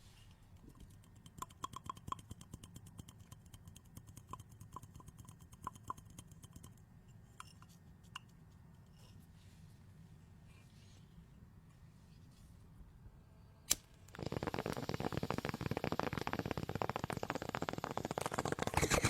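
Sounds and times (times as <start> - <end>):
water bubbling in a bong: 14.1 - 19.0.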